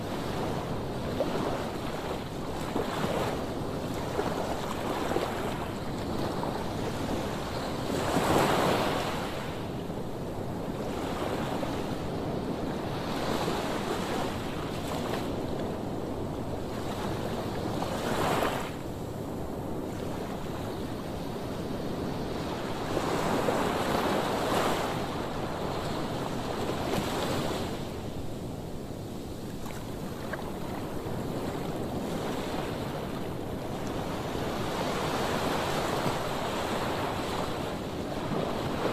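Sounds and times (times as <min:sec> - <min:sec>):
waves breaking on sandy shore: 0:00.0 - 0:38.9.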